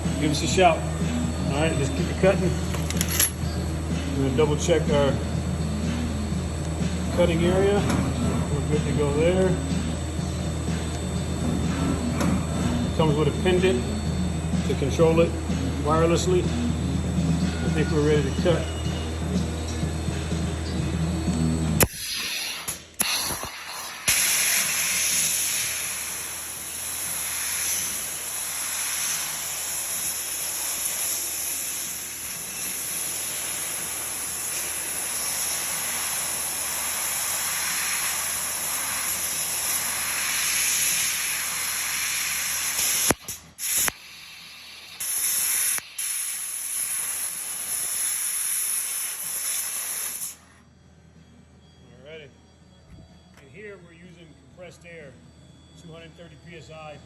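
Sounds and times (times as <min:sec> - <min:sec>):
compressed air hissing: 0:00.0 - 0:14.4, 0:21.8 - 0:50.6.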